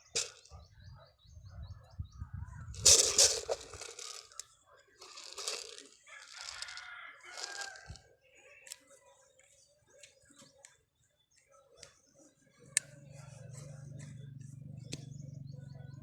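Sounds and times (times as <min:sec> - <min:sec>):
rooster crowing: 0:06.0 - 0:08.0.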